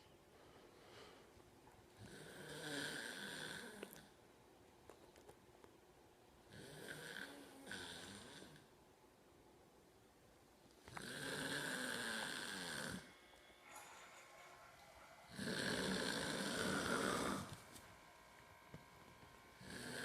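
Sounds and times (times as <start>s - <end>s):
person snoring: 2.0s - 4.1s, 6.5s - 8.7s, 10.9s - 13.2s, 15.3s - 17.8s, 19.6s - 20.0s.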